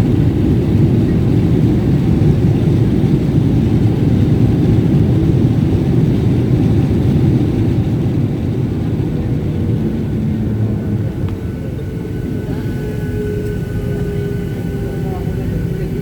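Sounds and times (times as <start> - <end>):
airplane cabin engine rumble: 0.0 - 16.0.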